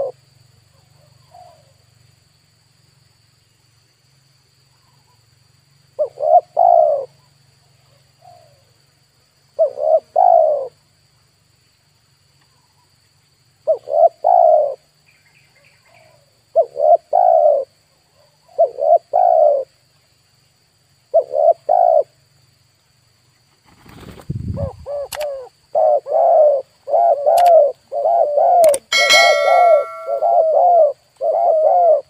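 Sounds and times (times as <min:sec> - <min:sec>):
dove cooing: 0:06.0 - 0:07.2, 0:09.6 - 0:10.8, 0:13.7 - 0:14.8, 0:16.0 - 0:19.7, 0:21.1 - 0:22.1, 0:24.6 - 0:32.0.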